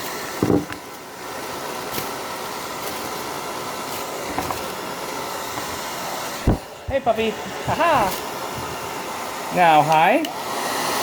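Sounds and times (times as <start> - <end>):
hair dryer blowing air: 0.0 - 11.0.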